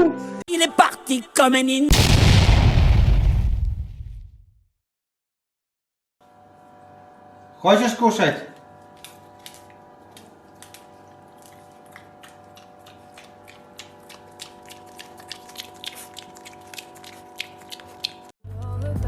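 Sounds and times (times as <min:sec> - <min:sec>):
pet crunching food: 0:08.8 - 0:18.3.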